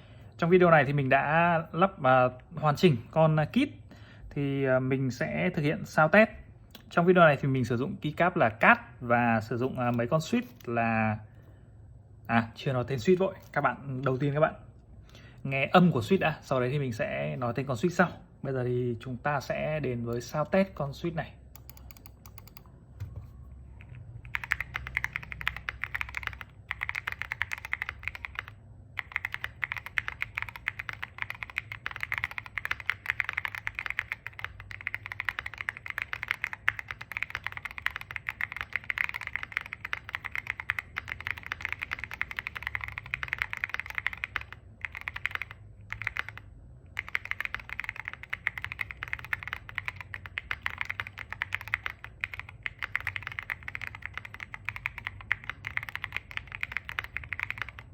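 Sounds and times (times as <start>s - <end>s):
mechanical keyboard typing: 20.1s - 57.9s.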